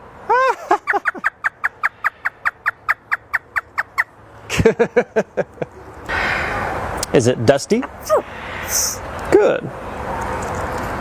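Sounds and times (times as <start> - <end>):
parrot imitating laughter: 0.3 - 4.0.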